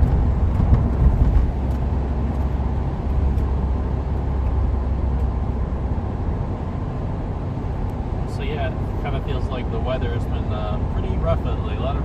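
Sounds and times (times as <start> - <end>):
tyre noise on wet road: 0.0 - 6.0
car engine and road drone: 0.0 - 12.0.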